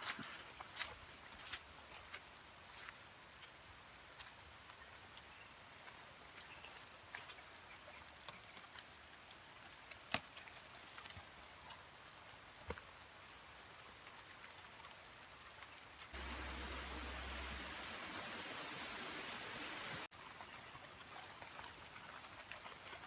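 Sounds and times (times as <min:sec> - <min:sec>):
faint high insect-like tone: 0:07.3 - 0:11.4
water hissing: 0:16.2 - 0:20.1.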